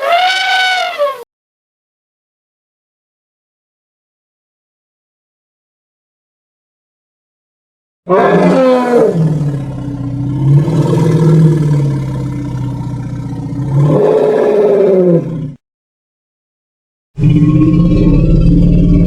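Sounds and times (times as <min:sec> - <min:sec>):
elephant roar: 0:00.0 - 0:01.2, 0:08.1 - 0:15.6, 0:17.2 - 0:19.0.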